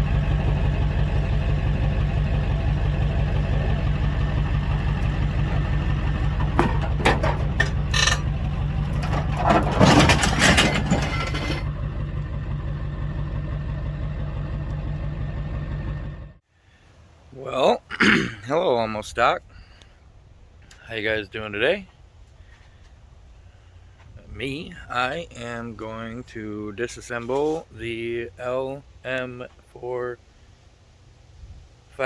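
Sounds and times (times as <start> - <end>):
engine idling: 0.0 - 16.4.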